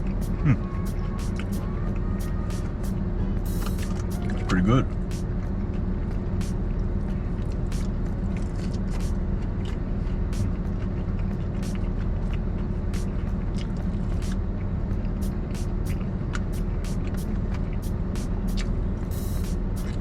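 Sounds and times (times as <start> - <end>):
steady low hum: 0.0 - 20.0
chewing with wet mouth clicks: 5.1 - 20.0.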